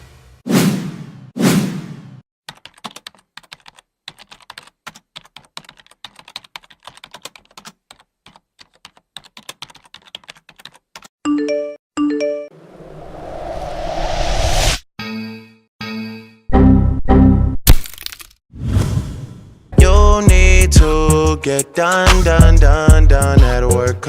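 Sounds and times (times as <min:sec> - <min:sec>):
keyboard typing: 0:02.5 - 0:11.7
short whoosh: 0:12.6 - 0:14.8.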